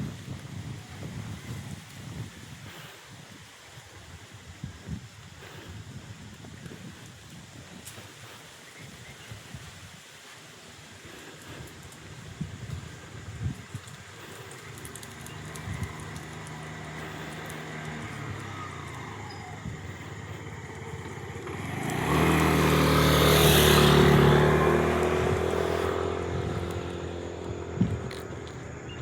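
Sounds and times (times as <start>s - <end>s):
vehicle engine passing by: 14.2s - 29.0s.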